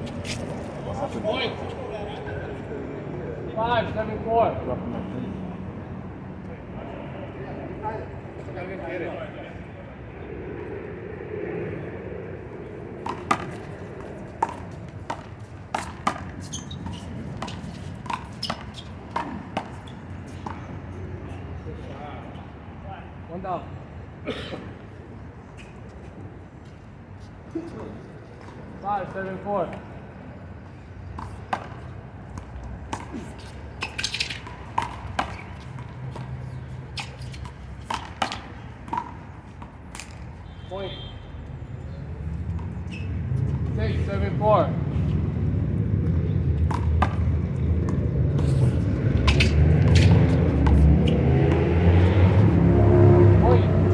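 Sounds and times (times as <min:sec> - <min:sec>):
short squeaks: 0:16.4 - 0:19.0, 0:42.7 - 0:43.5.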